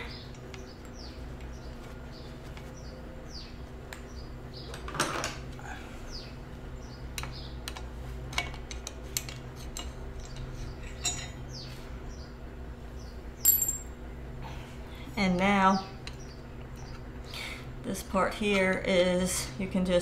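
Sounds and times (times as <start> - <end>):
light metal clinks: 13.4 - 13.9.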